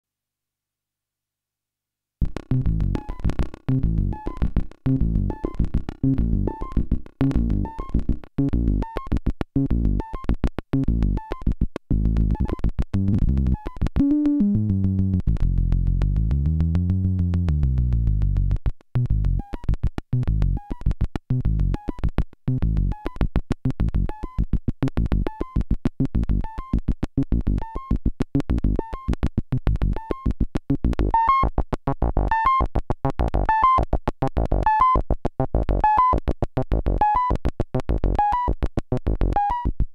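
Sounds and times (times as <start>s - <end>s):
synthesizer low note sequence: 2.2s - 8.9s, 11.9s - 19.4s.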